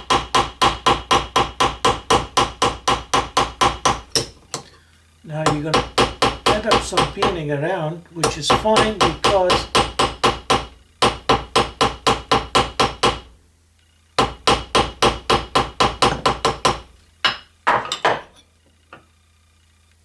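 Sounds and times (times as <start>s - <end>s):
hammer tapping a rivet: 0.1s - 4.7s.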